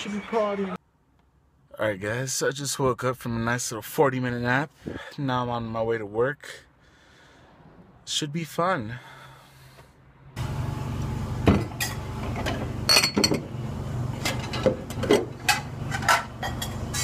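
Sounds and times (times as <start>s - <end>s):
dishes and cutlery clinking: 12.9s - 13.5s, 14.3s - 17.0s.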